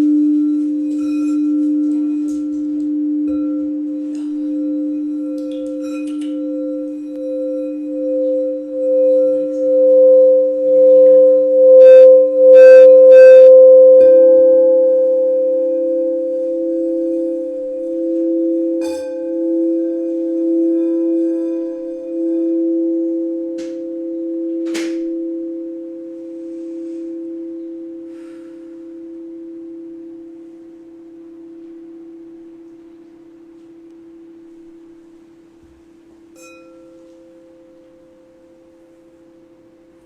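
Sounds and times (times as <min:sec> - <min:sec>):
bright bowl strikes: 0:00.0 - 0:35.3, 0:36.2 - 0:40.0
singing bowls ringing: 0:00.0 - 0:40.0
light chime: 0:36.3 - 0:39.4.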